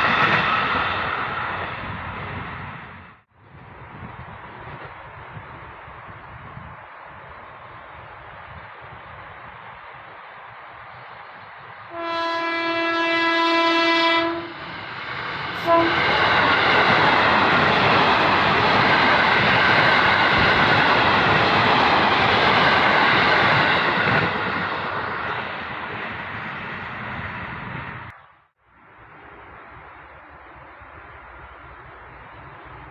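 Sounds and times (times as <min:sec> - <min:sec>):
train wheels and carriages rushing: 0:00.0 - 0:28.2
electric train horn blast: 0:11.9 - 0:14.6, 0:15.6 - 0:16.1.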